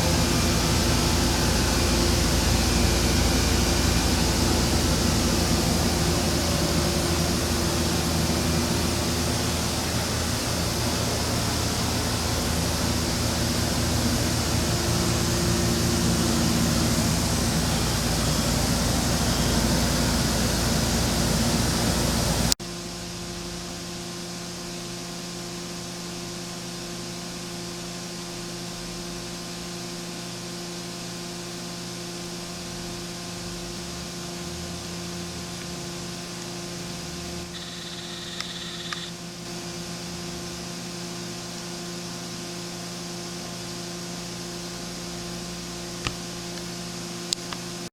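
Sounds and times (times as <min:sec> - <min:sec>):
machining center hissing and humming: 0:00.0 - 0:47.9.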